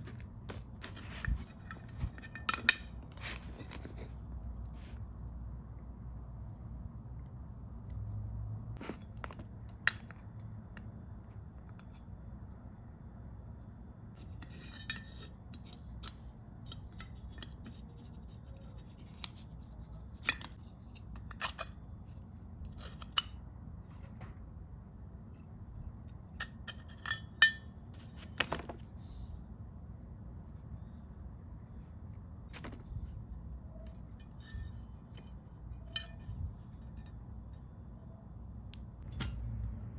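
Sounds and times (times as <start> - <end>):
steady low hum: 0.0 - 39.9
metal parts rattle: 0.5 - 3.7, 33.8 - 37.1
metal tools clinking: 0.8 - 3.5, 26.3 - 28.5.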